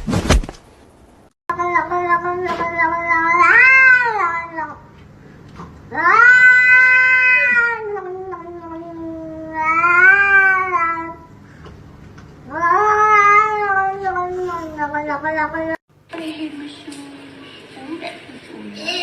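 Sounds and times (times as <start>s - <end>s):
cat yowling: 1.5s - 4.8s, 5.9s - 11.2s, 12.5s - 15.8s.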